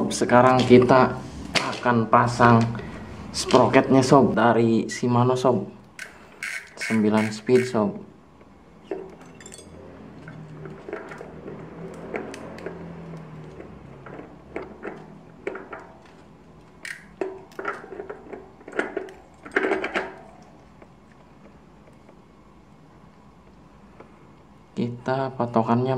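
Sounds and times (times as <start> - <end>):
metal sprockets clinking: 6.0 - 7.8, 8.8 - 20.6.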